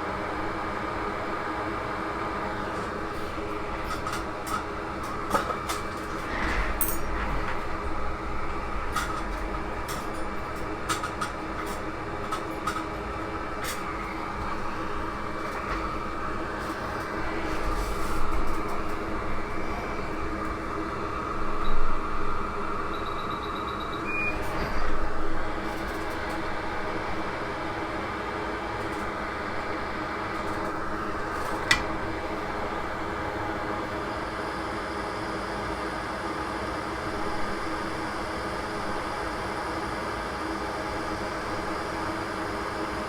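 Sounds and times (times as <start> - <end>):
fan hum: 0.0 - 23.0, 24.1 - 34.8
short beep: 22.9 - 24.4.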